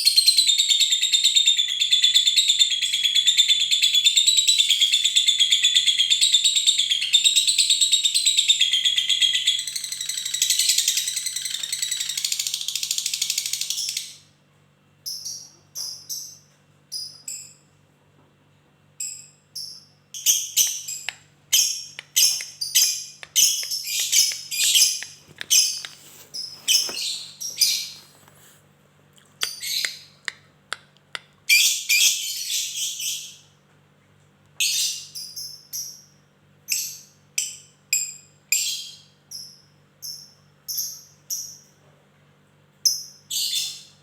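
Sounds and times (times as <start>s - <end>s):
lovebird chattering: 20.2s - 28.4s, 29.4s - 30.4s
bird clicks: 23.2s - 26.0s.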